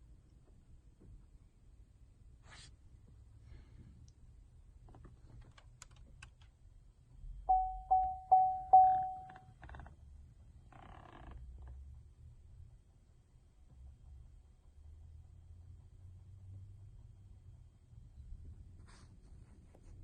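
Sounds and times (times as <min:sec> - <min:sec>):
faint clicks and taps: 0:04.8 - 0:06.6
electronic chime tones: 0:07.5 - 0:09.4.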